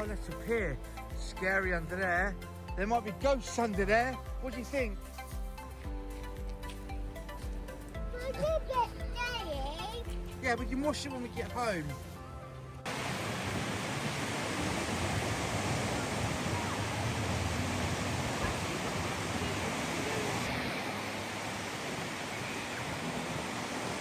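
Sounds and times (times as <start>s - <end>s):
wind: 0.0s - 24.0s
surf rushing: 12.9s - 24.0s.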